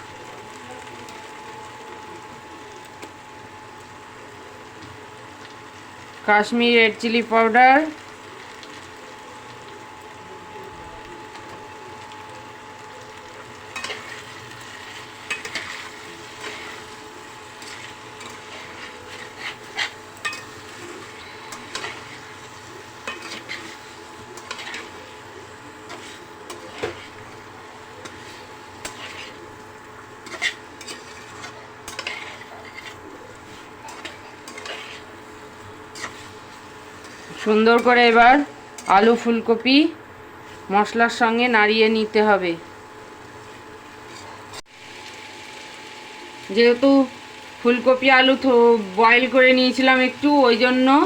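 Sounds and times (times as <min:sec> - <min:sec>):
spatula scraping a pan: 0:13.7 - 0:39.3, 0:43.4 - 0:44.6.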